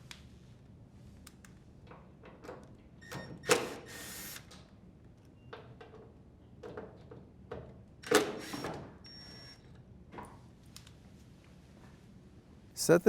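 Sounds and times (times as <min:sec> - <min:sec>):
drill driver spinning: 0:08.4 - 0:08.6.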